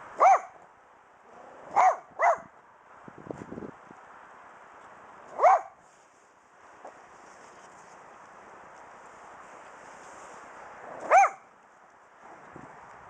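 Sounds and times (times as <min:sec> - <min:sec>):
small dog barking: 0:00.2 - 0:00.6, 0:01.6 - 0:02.5, 0:05.3 - 0:05.8, 0:11.0 - 0:11.5.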